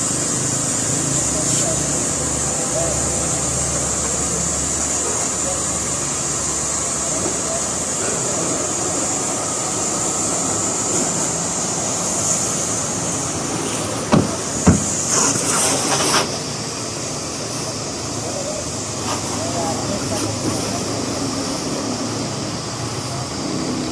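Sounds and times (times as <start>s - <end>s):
pressure washer spraying water: 0.0s - 23.9s
sharp knocks: 14.1s - 15.4s.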